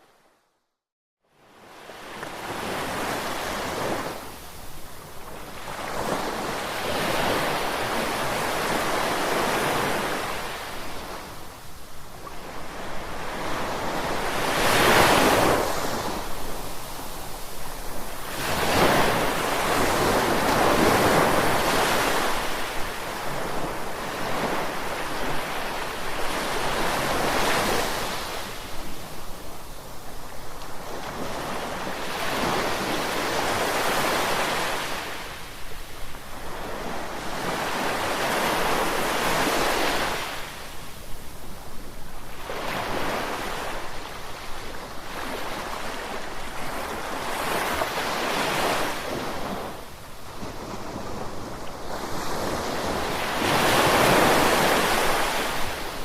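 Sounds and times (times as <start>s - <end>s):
ocean waves breaking: 12.4s - 28.7s, 50.4s - 56.0s.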